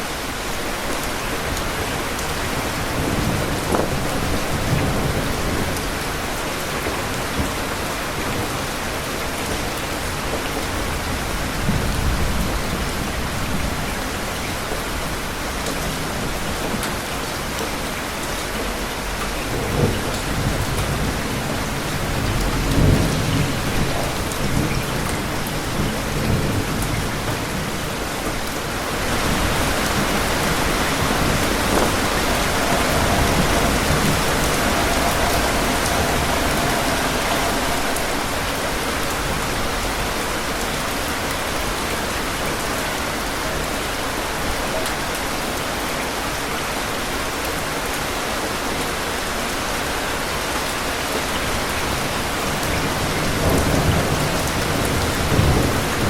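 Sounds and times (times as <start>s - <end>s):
steady rain falling: 0.0s - 56.0s
thunder rumbling: 0.1s - 43.7s, 51.4s - 56.0s.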